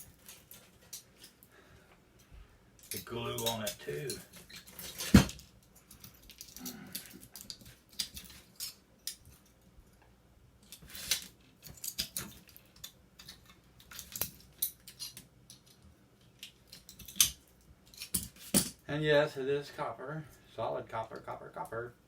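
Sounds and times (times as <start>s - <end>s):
hand tools clicking and scraping: 0.0s - 1.6s, 2.2s - 9.6s, 10.6s - 18.8s.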